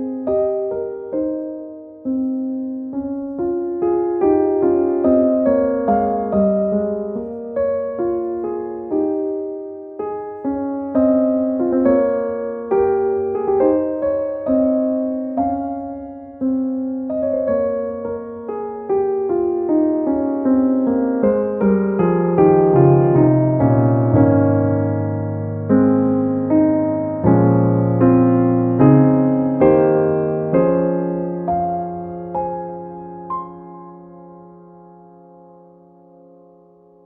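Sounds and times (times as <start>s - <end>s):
gentle piano melody: 0.0s - 37.0s.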